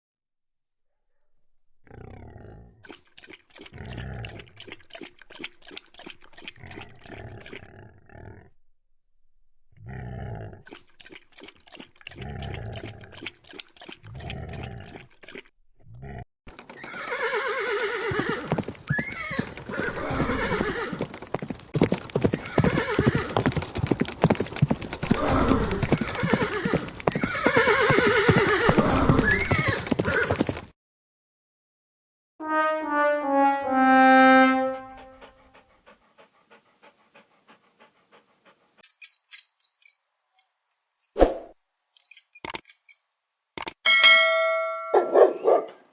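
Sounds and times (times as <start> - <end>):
horse neighing: 16.8 - 21.0, 22.4 - 23.4, 25.1 - 30.4
hooves clip-clopping: 18.1 - 30.7.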